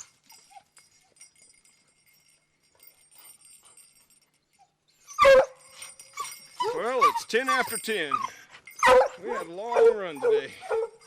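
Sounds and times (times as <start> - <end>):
dog collars jingling: 0.0 - 11.0
dog whimpering: 4.6 - 11.0.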